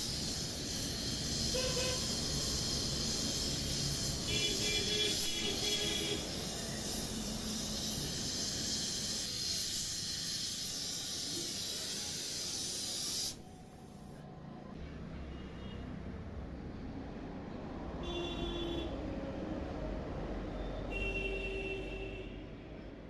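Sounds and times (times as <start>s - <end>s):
welding torch flame hissing: 0.0s - 14.3s.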